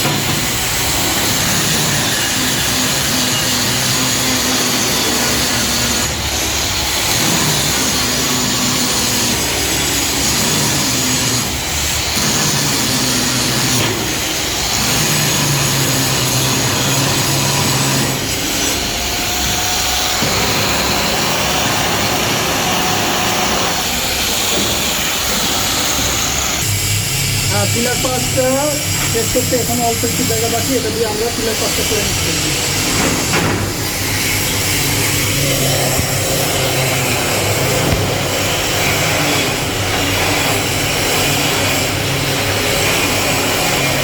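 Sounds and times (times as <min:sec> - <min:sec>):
welding arc crackling and hissing: 0:00.0 - 0:44.0.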